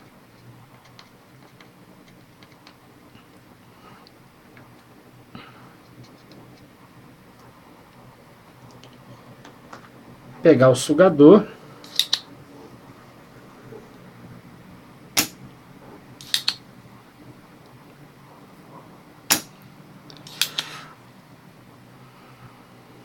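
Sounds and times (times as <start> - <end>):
desoldering pump clicking: 11.8 - 12.3, 16.2 - 16.6, 20.1 - 20.8.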